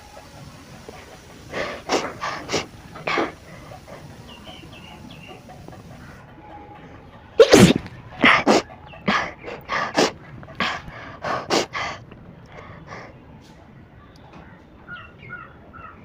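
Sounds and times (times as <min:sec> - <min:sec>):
person sneezing: 0:07.4 - 0:08.6.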